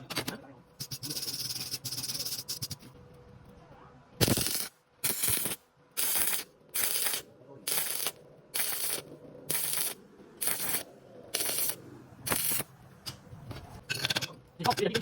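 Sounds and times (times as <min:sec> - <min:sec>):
welding arc crackling: 0:04.2 - 0:12.7.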